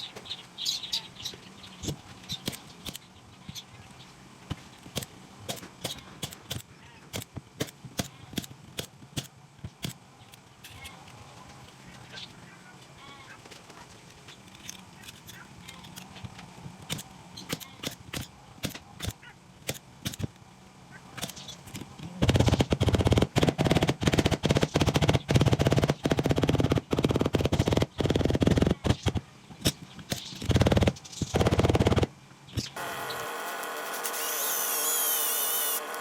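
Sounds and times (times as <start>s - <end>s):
power drill running in bursts: 32.8s - 36.0s.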